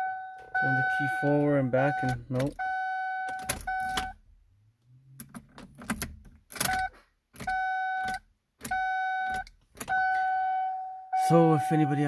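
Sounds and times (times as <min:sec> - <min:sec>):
dashboard warning chime: 0:00.0 - 0:04.2, 0:07.5 - 0:12.0.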